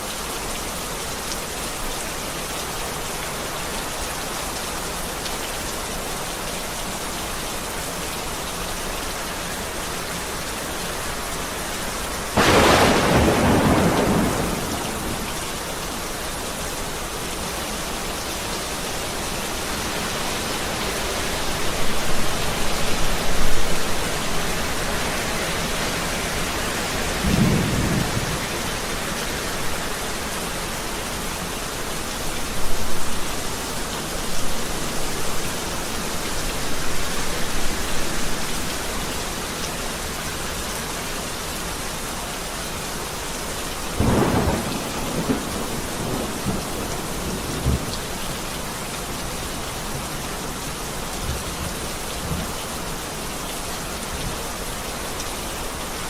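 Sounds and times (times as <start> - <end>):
heavy rain falling: 0.0 - 56.0
loud thunderclap: 12.4 - 15.3, 27.2 - 28.5, 44.0 - 47.9
low rumble of thunder: 12.4 - 15.6, 27.1 - 28.9, 44.0 - 48.1.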